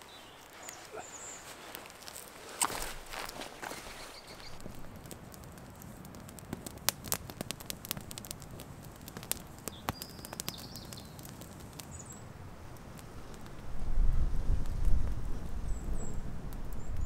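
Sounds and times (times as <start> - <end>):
bird chirping: 0.0 - 1.8, 3.6 - 4.6, 9.7 - 11.2
campfire crackling: 0.0 - 17.0.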